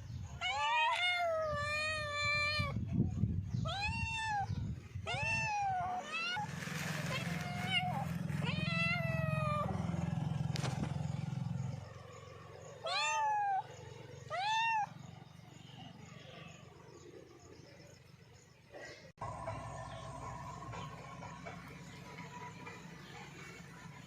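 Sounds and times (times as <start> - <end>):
cat meowing: 0.4 - 2.8, 3.6 - 6.4, 7.1 - 9.7, 12.8 - 14.9.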